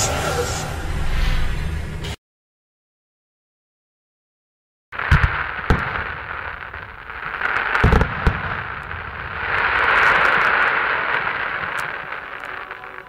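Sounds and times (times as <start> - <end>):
firework shells bursting: 5.0 - 13.0
fireworks hissing and crackling: 5.0 - 13.0.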